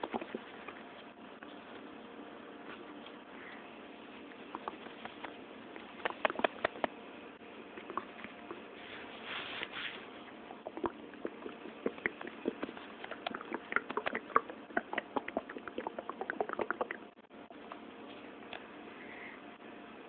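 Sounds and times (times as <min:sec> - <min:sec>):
stomach gurgling: 0:00.0 - 0:02.1, 0:04.4 - 0:07.0, 0:07.6 - 0:08.8, 0:10.2 - 0:17.3.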